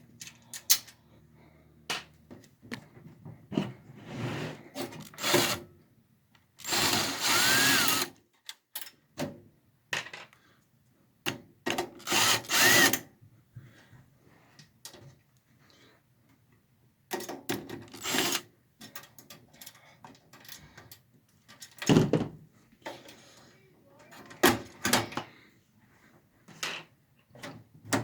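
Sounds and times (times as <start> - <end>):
power drill motor whine: 6.7 - 8.1, 12.1 - 12.9.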